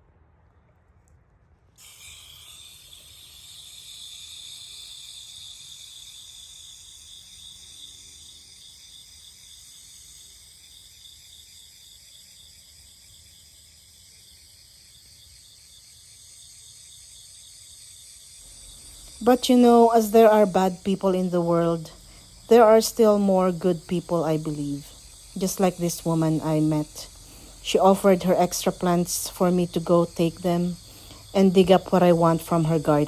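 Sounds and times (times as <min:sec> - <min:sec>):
insects chirring: 0:01.8 - 0:33.0.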